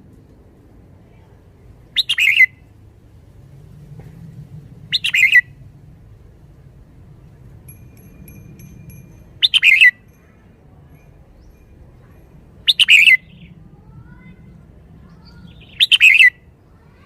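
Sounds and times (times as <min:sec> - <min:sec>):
bulbul singing: 0:07.6 - 0:13.6, 0:15.0 - 0:16.5.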